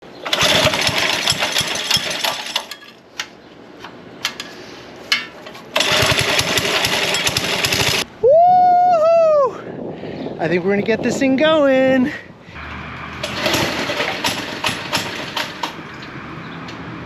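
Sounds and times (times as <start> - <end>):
go-kart engine running: 0.2 - 2.7, 5.8 - 8.0, 12.6 - 16.1.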